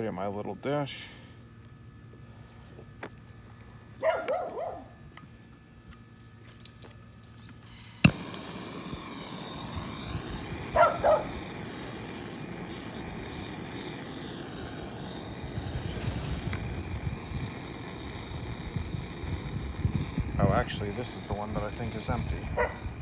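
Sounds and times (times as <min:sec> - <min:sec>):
dog barking: 0:04.0 - 0:04.9, 0:22.6 - 0:22.8
torch flame hissing: 0:07.7 - 0:23.0
torch igniter click: 0:07.7 - 0:23.0.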